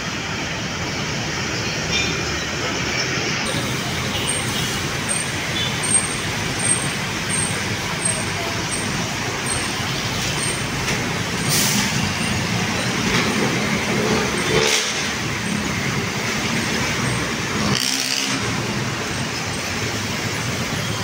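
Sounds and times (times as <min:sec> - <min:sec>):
road traffic passing: 0:00.0 - 0:21.0.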